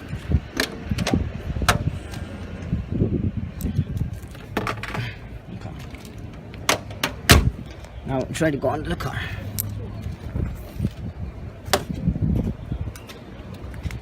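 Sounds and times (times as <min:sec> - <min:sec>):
low steady rumble: 0:00.0 - 0:08.1.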